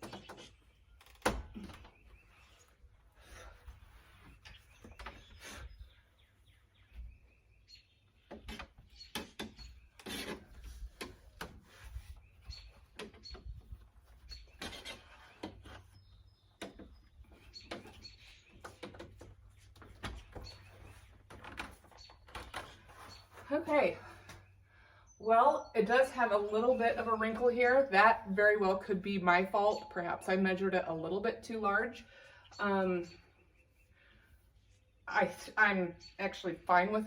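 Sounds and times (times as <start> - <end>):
screen rubbing and scraping in frame: 9.6 - 12.9.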